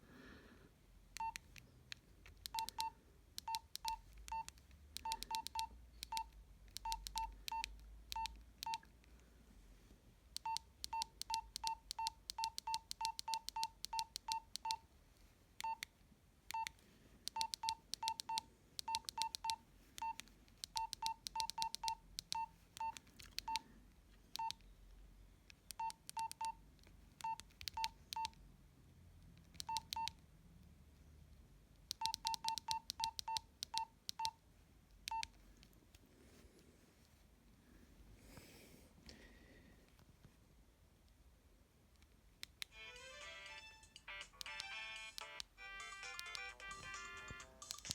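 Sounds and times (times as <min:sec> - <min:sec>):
key clicks: 0:01.1 - 0:08.9, 0:16.5 - 0:23.6, 0:31.9 - 0:34.4, 0:44.3 - 0:47.9
keypad beeps: 0:01.2 - 0:01.4, 0:02.4 - 0:08.9, 0:10.4 - 0:14.8, 0:15.6 - 0:15.9, 0:16.5 - 0:23.6, 0:24.4 - 0:24.6, 0:25.6 - 0:26.6, 0:27.2 - 0:28.4, 0:29.6 - 0:30.2, 0:31.9 - 0:34.4, 0:35.1 - 0:35.3, 0:43.7 - 0:47.9.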